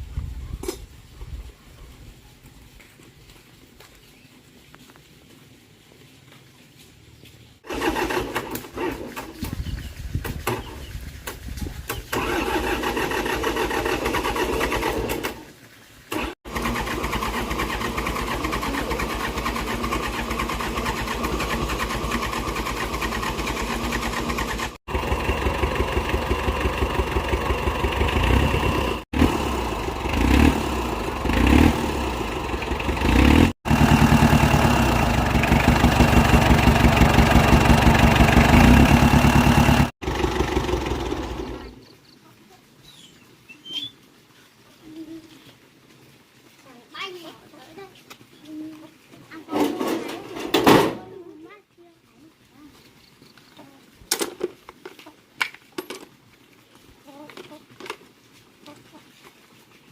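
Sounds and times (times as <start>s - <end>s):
tractor engine running: 7.6s - 41.8s.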